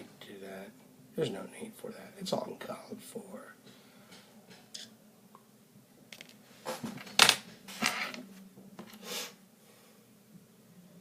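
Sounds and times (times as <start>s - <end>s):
faint steady hum: 0.0s - 11.0s
small objects handled on surface: 6.1s - 9.1s.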